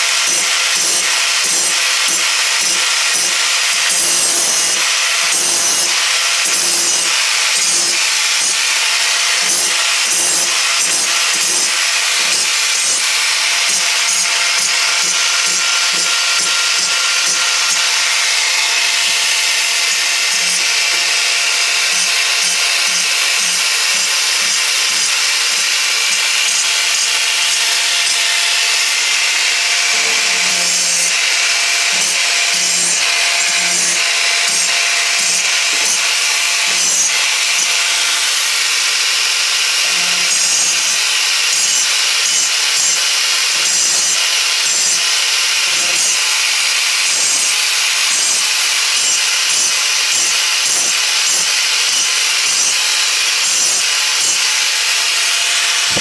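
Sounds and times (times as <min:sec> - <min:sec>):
power grinder grinding metal: 0:00.0 - 0:56.0.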